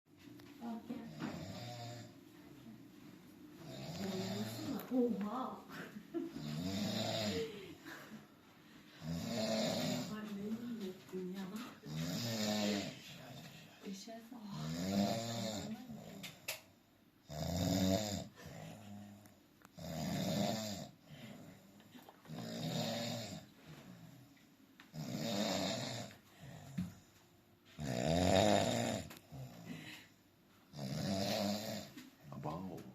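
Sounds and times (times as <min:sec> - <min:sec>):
man snoring: 0:01.1 - 0:02.2, 0:03.6 - 0:04.8, 0:06.3 - 0:07.8, 0:09.0 - 0:10.2, 0:11.9 - 0:13.5, 0:14.5 - 0:16.2, 0:17.2 - 0:21.7, 0:22.3 - 0:23.5, 0:24.9 - 0:26.9, 0:27.8 - 0:29.7, 0:30.7 - 0:32.7.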